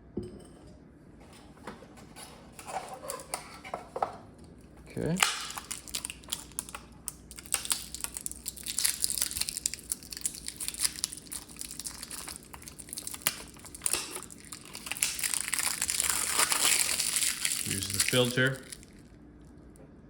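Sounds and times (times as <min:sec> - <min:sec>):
plastic packaging crinkling: 0:05.1 - 0:19.1.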